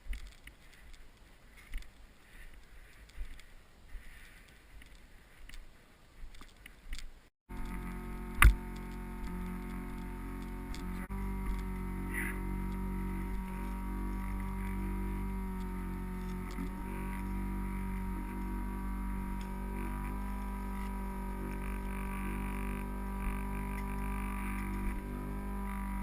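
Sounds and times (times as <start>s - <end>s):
small fan humming: 7.5s - 26.0s.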